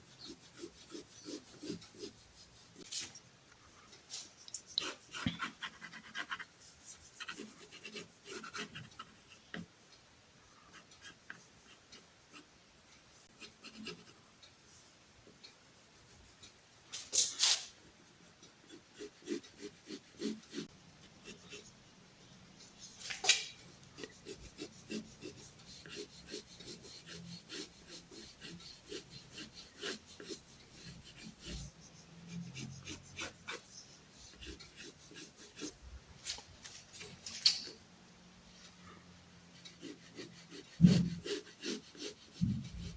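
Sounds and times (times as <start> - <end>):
drawing tool scratching paper: 0.1 - 2.9, 4.8 - 9.7, 18.6 - 21.7, 22.6 - 35.8, 39.6 - 42.9
brushing sounds: 22.7 - 24.4, 28.9 - 37.8.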